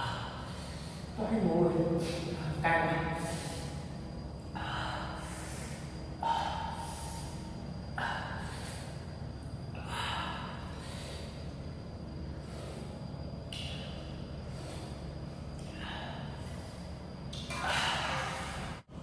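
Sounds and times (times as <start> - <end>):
man breathing hard: 0.0 - 1.2, 4.5 - 17.1.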